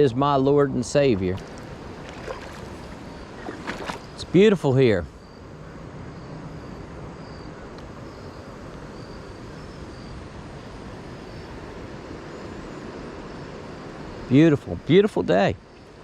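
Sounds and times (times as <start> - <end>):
river water rushing: 1.1 - 4.8.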